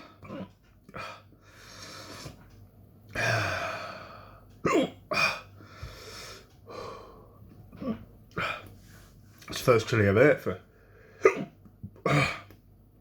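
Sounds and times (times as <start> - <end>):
man breathing heavily: 3.1 - 4.5, 5.2 - 7.4
man hiccuping: 4.6 - 5.5, 11.2 - 12.6.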